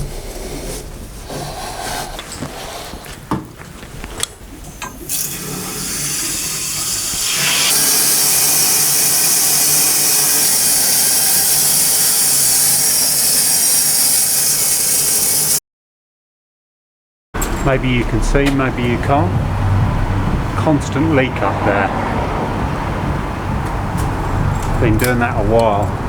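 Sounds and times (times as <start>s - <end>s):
loud rushing hiss: 5.1s - 15.6s.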